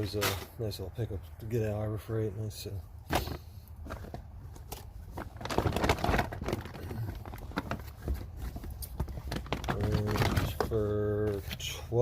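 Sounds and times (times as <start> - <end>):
packaging being handled: 3.1 - 11.6.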